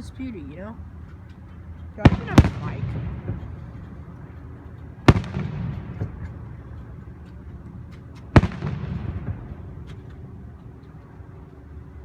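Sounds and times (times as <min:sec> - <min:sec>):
faint firework pops: 0:02.0 - 0:03.4, 0:05.0 - 0:06.4, 0:08.3 - 0:09.5
fireworks booming: 0:02.0 - 0:03.7, 0:05.0 - 0:06.6, 0:08.3 - 0:09.7.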